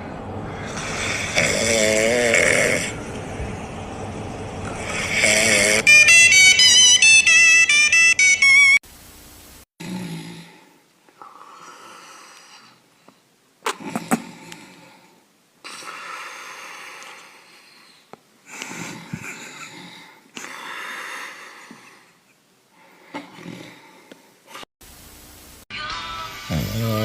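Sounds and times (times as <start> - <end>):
person snoring: 0.5 - 3.0, 4.8 - 5.9, 9.8 - 12.8, 26.4 - 27.0.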